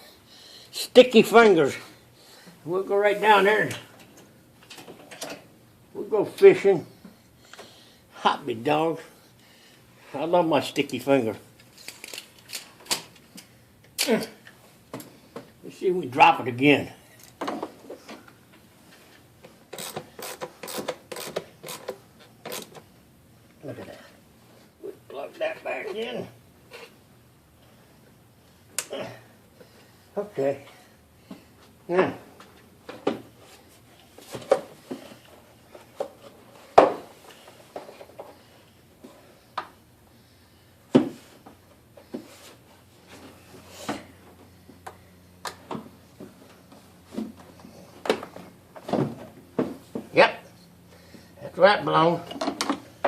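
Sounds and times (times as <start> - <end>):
tools and engine parts clicking: 19.7 - 22.8.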